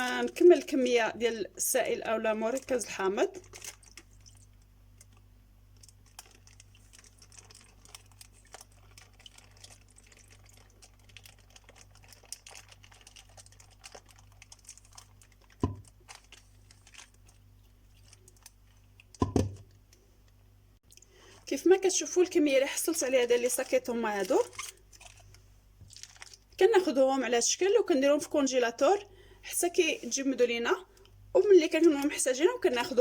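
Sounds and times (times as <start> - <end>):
plastic bags crinkling: 2.4 - 5.2, 5.8 - 19.8, 22.8 - 26.6.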